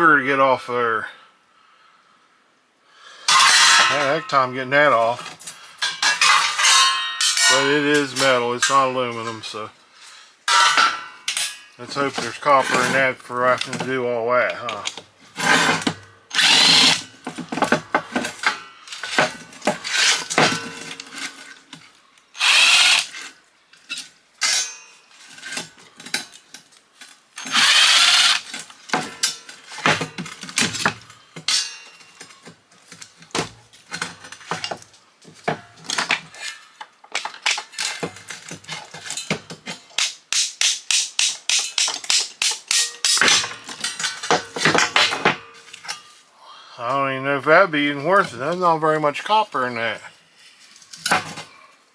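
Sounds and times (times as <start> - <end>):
metal parts clinking and knocking: 5.4 - 9.4, 10.5 - 13.0, 13.6 - 21.4, 27.1 - 46.1
handheld power tool bursts: 14.7 - 17.2, 22.4 - 23.2, 27.4 - 28.5, 40.0 - 45.5.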